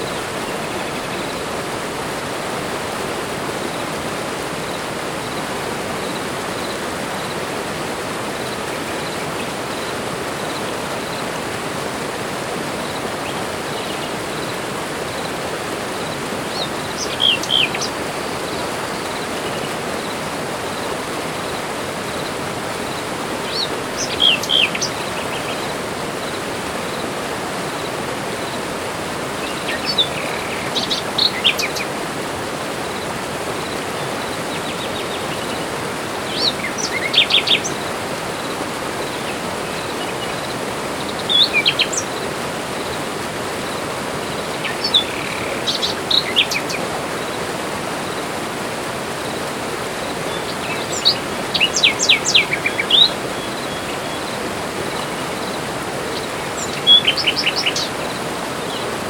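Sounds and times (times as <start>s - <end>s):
forest birds chirping: 0.0s - 1.6s, 12.7s - 28.7s, 29.3s - 48.2s, 49.1s - 59.0s.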